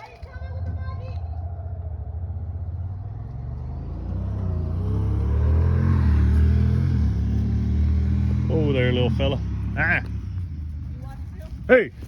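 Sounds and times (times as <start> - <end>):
vehicle engine revving up: 1.8 - 10.8.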